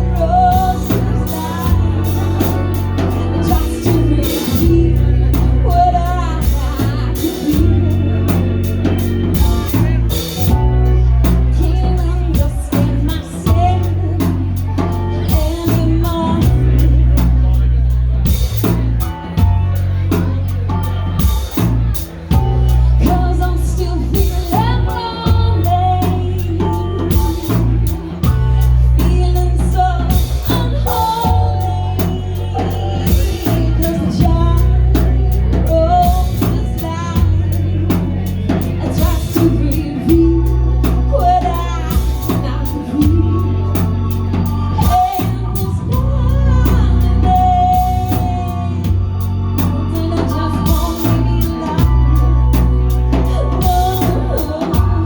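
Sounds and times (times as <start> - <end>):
heavy bass: 0.0 - 55.0
person singing: 0.0 - 55.0
drum kit hits: 6.4 - 11.5.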